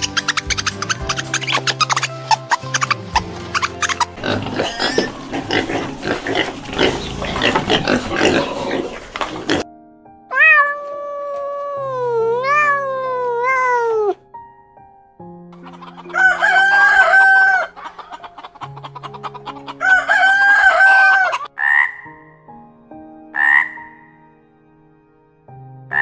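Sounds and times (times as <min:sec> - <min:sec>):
background music: 0:00.0 - 0:26.0
dense noisy animal sound: 0:04.2 - 0:09.6
cat meowing: 0:10.3 - 0:14.2.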